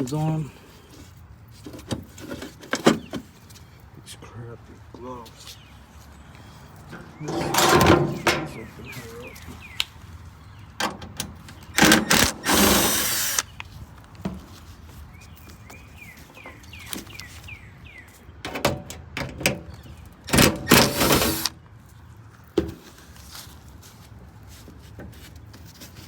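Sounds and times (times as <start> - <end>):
cordless drill whirring: 11.8 - 13.5, 20.7 - 21.5.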